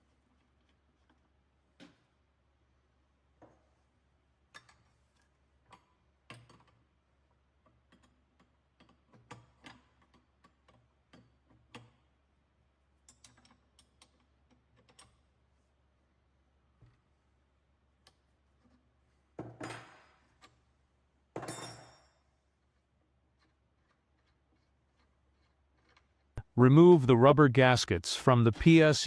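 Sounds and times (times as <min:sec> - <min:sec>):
small parts clicking and tapping: 0:13.0 - 0:15.2, 0:23.3 - 0:26.4.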